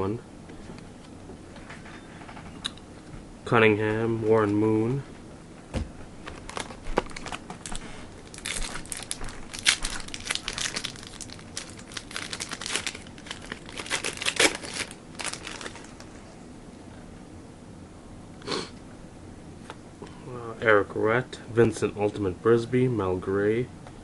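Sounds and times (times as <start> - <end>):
plastic wrapper crinkling and tearing: 6.3 - 16.2.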